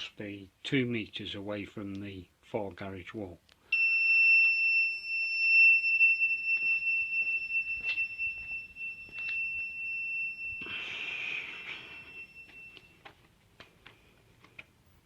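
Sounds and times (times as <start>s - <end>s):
buzzer high-pitched tone: 3.8s - 13.0s.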